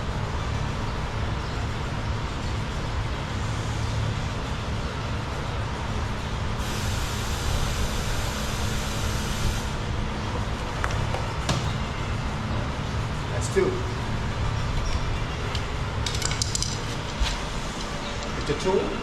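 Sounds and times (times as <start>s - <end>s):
hiss: 6.6s - 9.6s.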